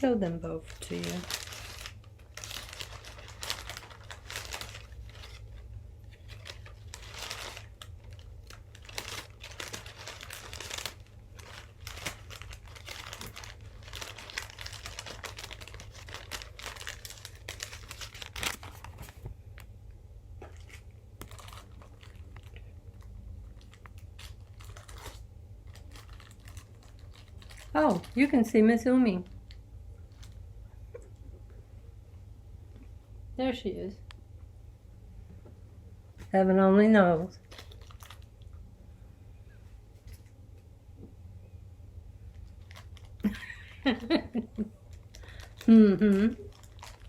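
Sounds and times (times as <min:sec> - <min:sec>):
packing filler crinkling: 0:00.4 - 0:19.8, 0:20.4 - 0:30.4, 0:37.4 - 0:38.6, 0:42.2 - 0:47.0
small crackles and clicks: 0:20.4 - 0:28.6, 0:37.4 - 0:38.6, 0:42.3 - 0:47.0.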